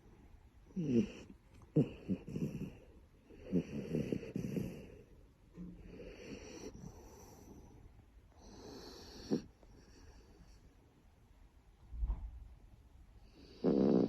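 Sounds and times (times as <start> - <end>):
dog breathing: 0.7 - 5.2, 5.8 - 10.8
dog snoring: 0.7 - 5.2, 5.8 - 10.6, 13.2 - 14.0.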